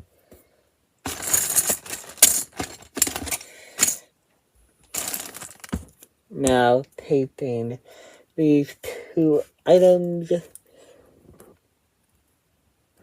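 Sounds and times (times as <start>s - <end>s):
plastic toy bricks clattering: 1.1s - 4.0s, 4.9s - 5.9s.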